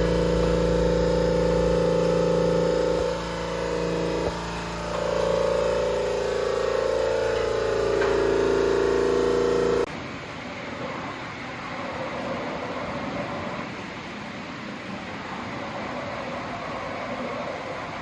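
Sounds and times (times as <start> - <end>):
engine running at high revs: 0.0 - 9.9
rough noisy rumble: 0.0 - 9.9.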